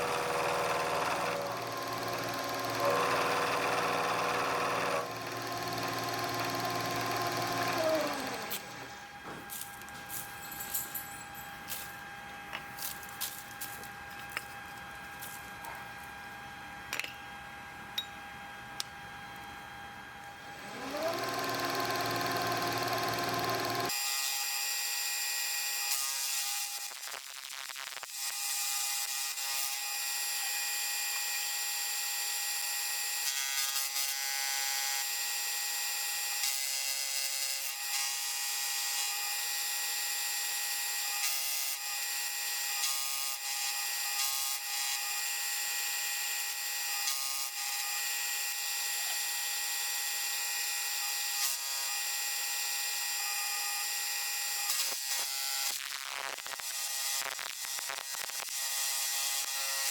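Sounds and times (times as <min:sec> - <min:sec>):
power tool cutting metal whine: 0:00.0 - 0:08.9, 0:20.5 - 0:27.0, 0:28.0 - 0:59.9.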